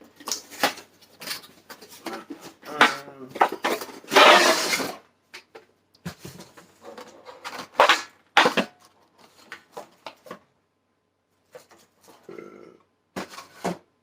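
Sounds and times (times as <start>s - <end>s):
packaging crinkling and rustling: 0.0s - 2.6s.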